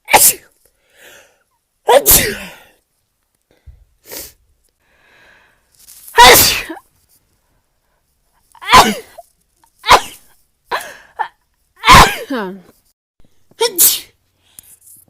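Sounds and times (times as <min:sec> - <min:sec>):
woman sneezing: 0:00.1 - 0:00.5, 0:01.9 - 0:02.7, 0:06.2 - 0:06.8, 0:08.6 - 0:09.2, 0:09.8 - 0:10.9, 0:11.8 - 0:12.6, 0:13.6 - 0:14.2.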